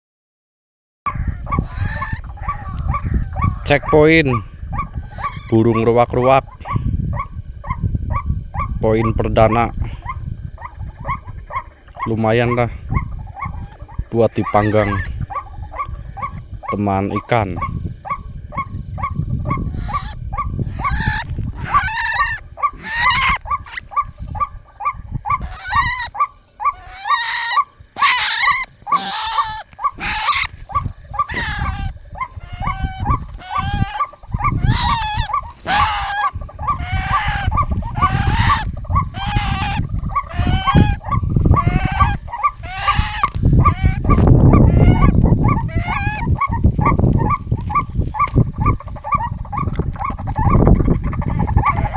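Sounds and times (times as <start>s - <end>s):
bird croaking calls: 1.1s - 7.3s, 9.9s - 51.9s
harsh bird calls: 1.2s - 6.8s, 11.0s - 17.8s, 19.5s - 51.9s.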